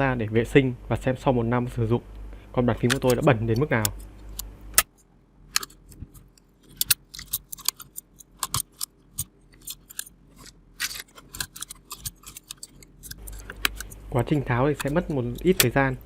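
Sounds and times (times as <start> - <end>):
sharp plastic clicks: 2.8 - 4.9, 5.5 - 14.1.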